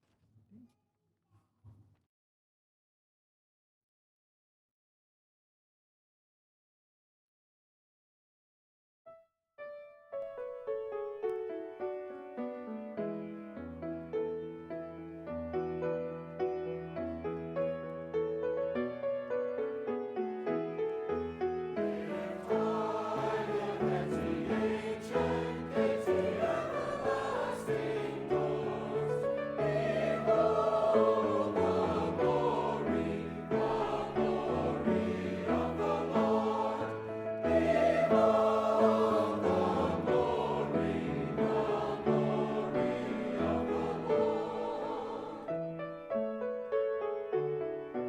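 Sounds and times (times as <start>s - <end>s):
keyboard accompaniment: 9.6s - 48.0s
choir singing: 21.7s - 45.8s.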